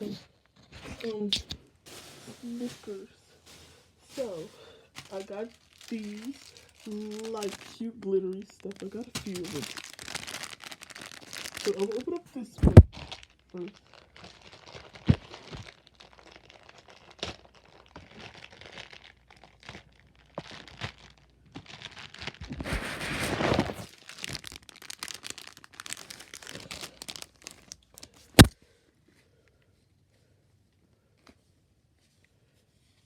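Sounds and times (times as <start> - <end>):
plastic packaging crinkling and tearing: 0.8 - 28.6.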